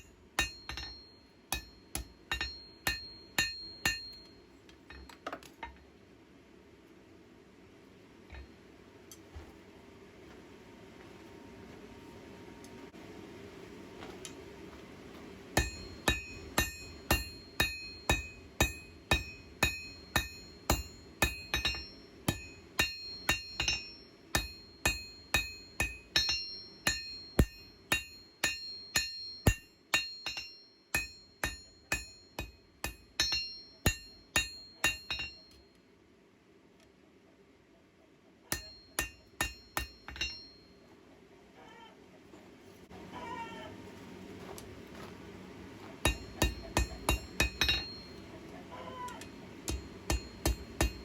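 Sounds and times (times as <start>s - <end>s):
hammer ringing on anvil: 0.0s - 5.2s, 15.6s - 35.7s, 38.5s - 40.8s, 46.0s - 48.2s, 49.2s - 51.0s.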